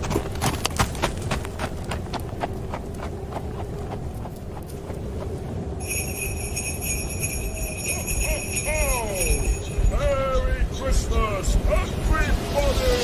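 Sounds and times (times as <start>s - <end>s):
horse hooves clip-clopping: 0.0s - 9.4s
sleigh bells jingling: 5.8s - 10.4s
low rumble: 9.4s - 13.0s.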